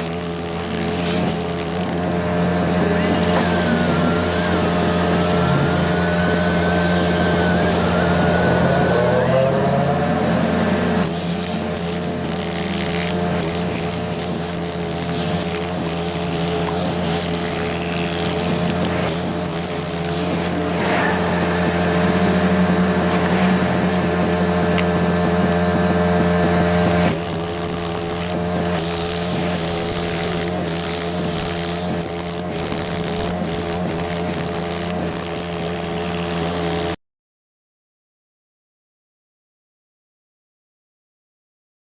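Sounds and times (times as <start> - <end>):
engine running under load: 0.0 - 37.0.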